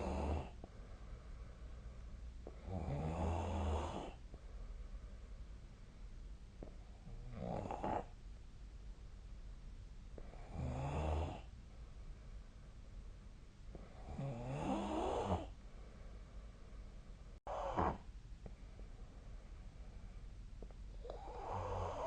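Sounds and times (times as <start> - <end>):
person snoring: 0.0 - 0.6, 2.5 - 4.2, 7.0 - 8.1, 13.8 - 15.5, 17.5 - 18.0, 21.0 - 22.0.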